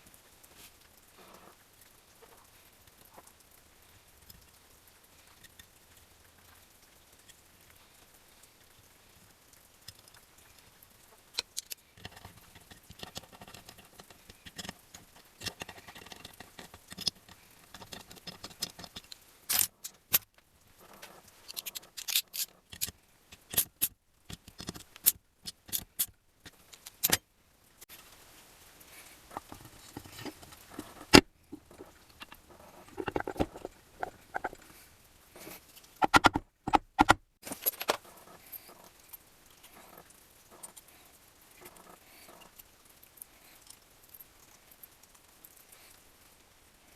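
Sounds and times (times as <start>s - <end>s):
metal parts and tools clinking: 11.4s - 27.2s, 29.3s - 34.7s, 35.8s - 40.9s.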